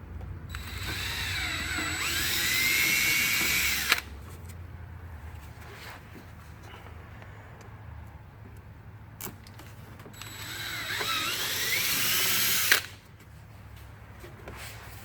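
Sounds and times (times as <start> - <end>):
power drill drilling: 0.5 - 4.1, 10.2 - 13.0.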